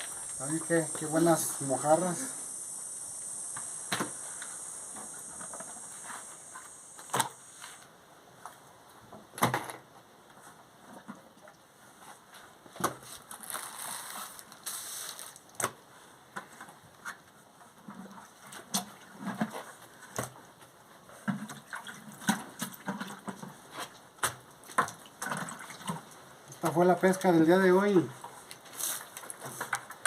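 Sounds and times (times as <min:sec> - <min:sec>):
high-pitched insect chirring: 0:00.0 - 0:07.8.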